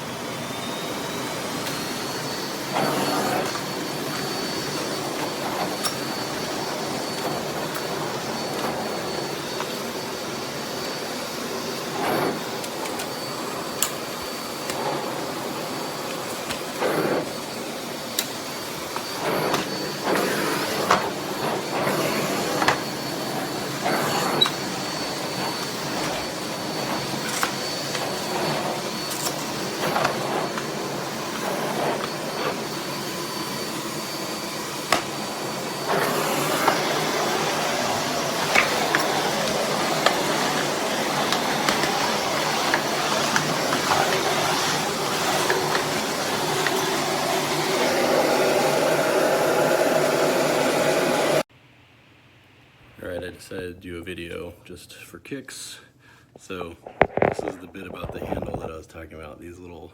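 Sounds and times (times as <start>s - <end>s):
vacuum cleaner running: 0.0s - 51.5s, 56.5s - 58.6s
vacuum nozzle knocking: 11.9s - 48.7s.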